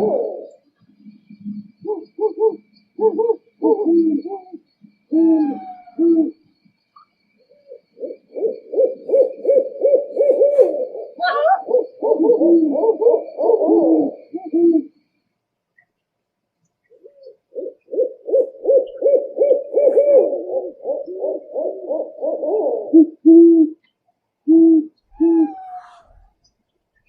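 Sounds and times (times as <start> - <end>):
higher rising owl call: 0.0 - 6.4, 7.5 - 15.0, 24.4 - 26.4
owls hooting: 0.0 - 15.0, 16.9 - 23.8, 24.4 - 26.4.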